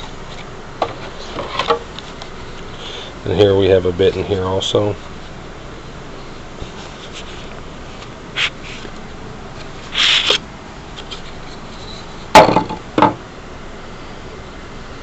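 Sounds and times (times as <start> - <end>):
hard objects knocking: 12.3 - 13.2.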